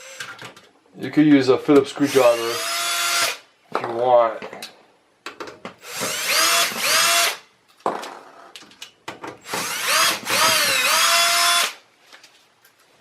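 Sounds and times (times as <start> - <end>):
power drill driving screws: 2.1 - 3.4, 5.8 - 7.4, 9.4 - 11.8.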